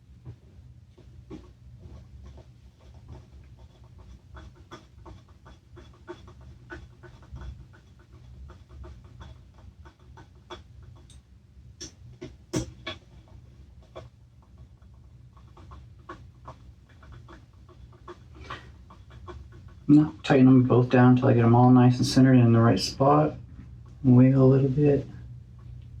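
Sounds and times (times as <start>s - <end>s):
clicks and taps of engine parts: 9.9s - 14.1s.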